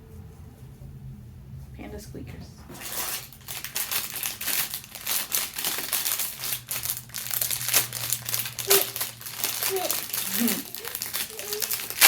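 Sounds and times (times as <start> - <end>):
plastic packaging crinkling: 2.7 - 12.0.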